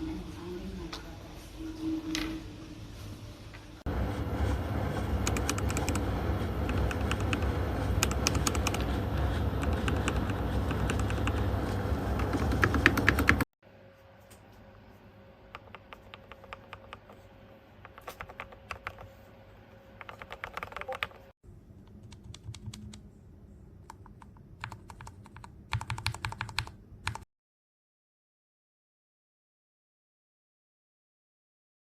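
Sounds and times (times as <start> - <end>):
mechanical keyboard typing: 5.2 - 13.4, 15.6 - 17.1, 17.9 - 19.1, 20.0 - 21.3, 21.9 - 23.0, 23.8 - 27.2.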